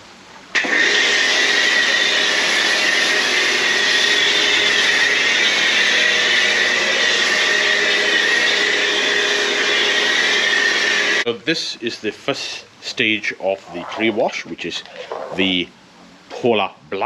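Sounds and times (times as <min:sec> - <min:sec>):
pressure washer pump whine: 0:00.5 - 0:11.2.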